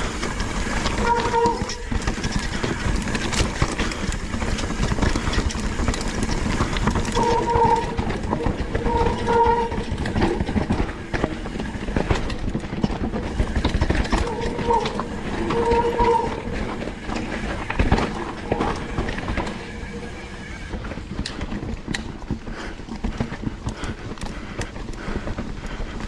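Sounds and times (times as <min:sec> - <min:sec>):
bike tyres and frame rattling: 0:00.0 - 0:26.0
disc brakes squealing: 0:00.2 - 0:12.4, 0:13.1 - 0:21.0.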